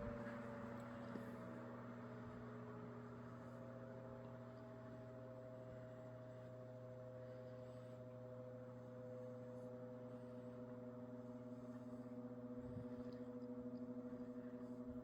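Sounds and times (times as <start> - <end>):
table fan motor humming: 9.2 - 15.0.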